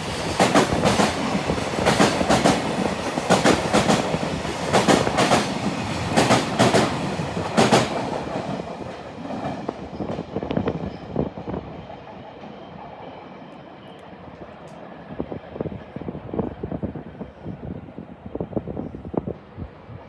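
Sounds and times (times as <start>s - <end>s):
train wheels clacking on rail joints: 0.1s - 10.7s.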